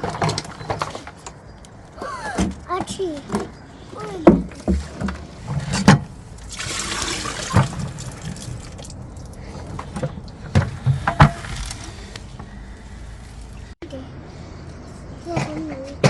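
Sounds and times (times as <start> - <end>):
water pouring and splashing: 4.5 - 11.9.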